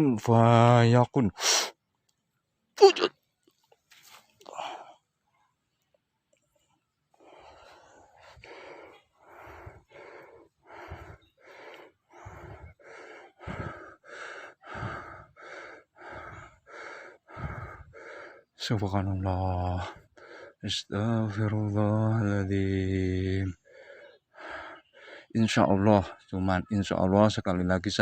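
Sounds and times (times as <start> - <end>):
man breathing hard: 4.4 - 5.1, 7.1 - 18.6, 19.8 - 20.6, 23.5 - 25.4.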